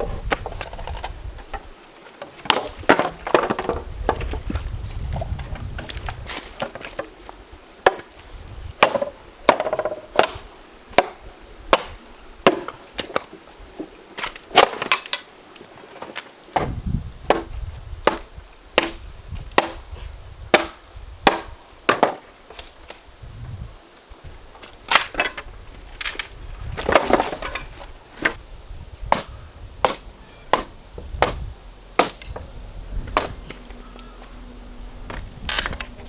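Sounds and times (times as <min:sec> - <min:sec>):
blade chopping wood: 0:02.4 - 0:03.8, 0:08.8 - 0:13.3, 0:14.2 - 0:15.2, 0:16.6 - 0:19.0, 0:19.6 - 0:19.8, 0:20.5 - 0:22.2, 0:29.1 - 0:32.4, 0:33.1 - 0:33.6.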